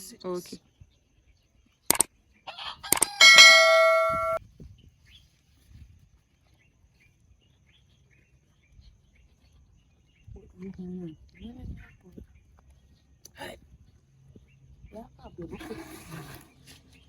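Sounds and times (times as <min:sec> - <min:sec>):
rooster crowing: 0:02.5 - 0:04.4
short clicks: 0:02.9 - 0:04.4.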